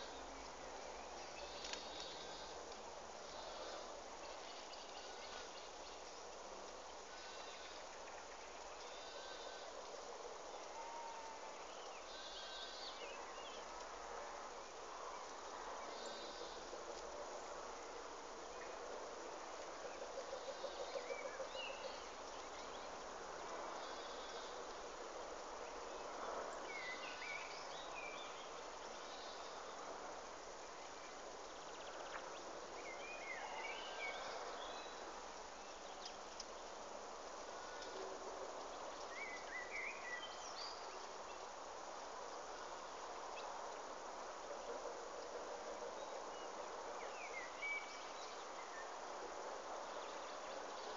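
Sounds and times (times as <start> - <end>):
insects hissing: 0.0 - 13.8, 14.7 - 50.9.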